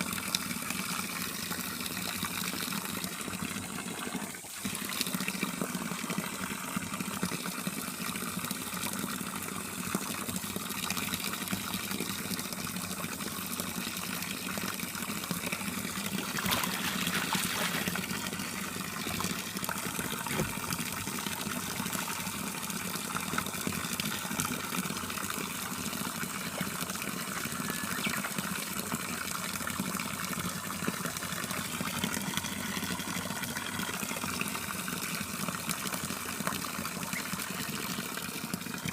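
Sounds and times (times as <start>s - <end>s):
waterfall pouring into pool: 0.0s - 38.9s
water splashing: 15.9s - 25.3s.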